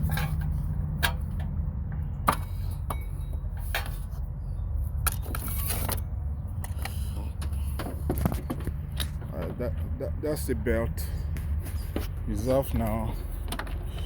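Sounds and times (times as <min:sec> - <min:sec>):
metal tools clinking: 0:00.0 - 0:01.5.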